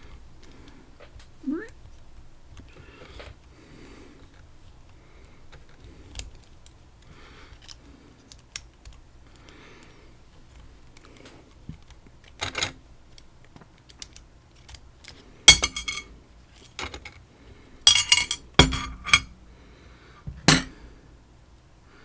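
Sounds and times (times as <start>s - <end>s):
small metal tools clinking: 15.5s - 16.1s, 17.9s - 19.3s, 20.5s - 20.7s.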